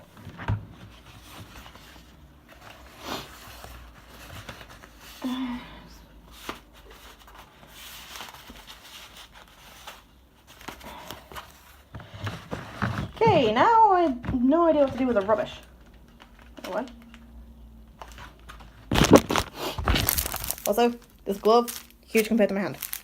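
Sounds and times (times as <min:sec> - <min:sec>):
packaging rustling and crinkling: 0:06.2 - 0:13.5, 0:14.9 - 0:23.0.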